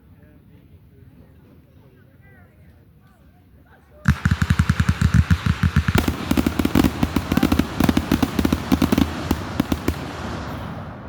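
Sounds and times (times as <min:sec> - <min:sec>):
loud sharp bangs: 0:04.1 - 0:11.0.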